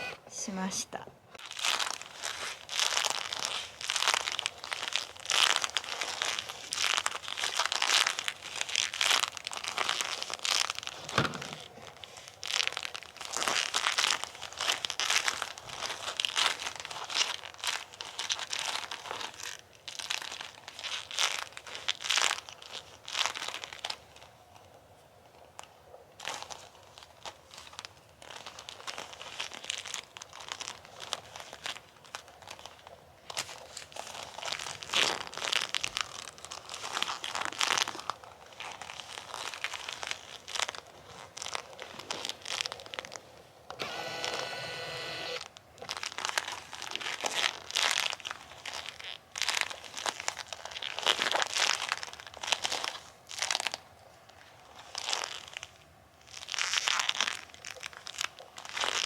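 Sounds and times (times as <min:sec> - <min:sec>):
rubber squeak: 0:00.0 - 0:00.2.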